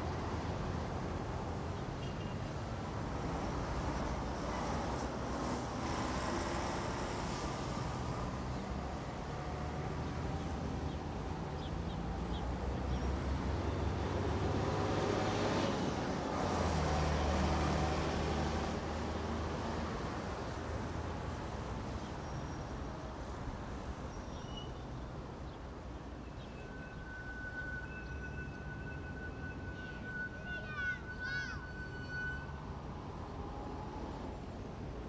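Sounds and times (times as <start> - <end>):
faint high squeaks: 24.1 - 24.9, 26.2 - 34.7.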